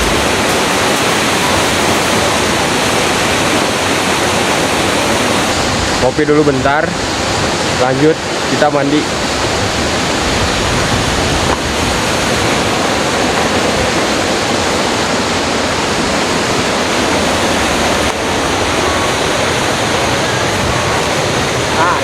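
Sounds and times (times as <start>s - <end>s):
rush of flowing water: 0.0s - 22.0s.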